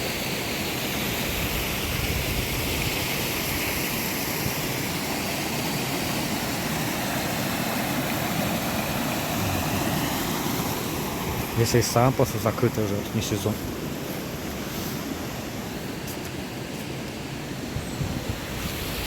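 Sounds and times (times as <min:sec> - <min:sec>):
fast mountain stream rushing: 0:00.0 - 0:19.0.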